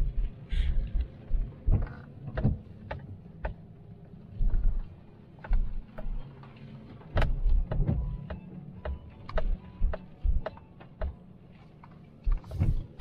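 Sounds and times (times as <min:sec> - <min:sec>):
vehicle cabin rumble: 0:00.0 - 0:13.0.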